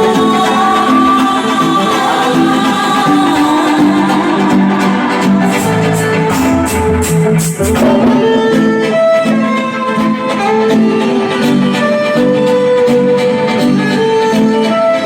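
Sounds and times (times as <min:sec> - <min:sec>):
loud music over sound system: 0:01.8 - 0:11.0.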